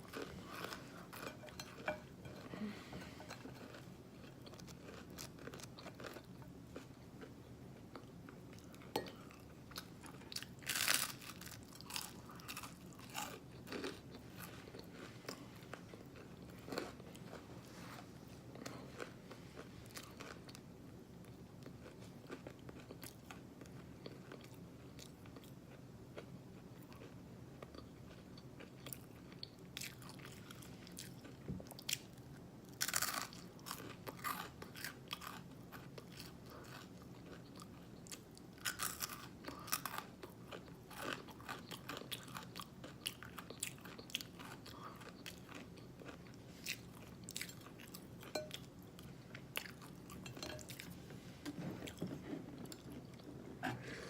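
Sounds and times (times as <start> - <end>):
close chewing: 0.0 - 6.9, 32.8 - 51.0.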